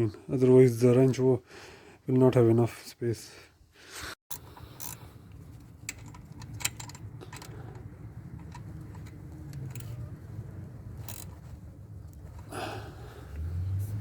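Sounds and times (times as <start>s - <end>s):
metallic clicks of wrenches: 4.3s - 10.3s, 10.9s - 12.5s
steady low rumble: 4.4s - 14.0s.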